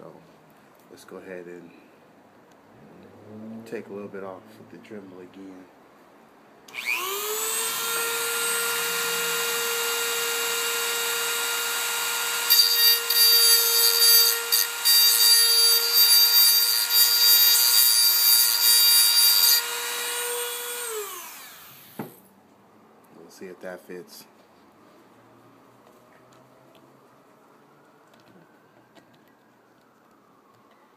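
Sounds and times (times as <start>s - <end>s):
rotary tool grinding metal rail: 6.7s - 22.0s
rotary tool whining: 6.7s - 22.1s.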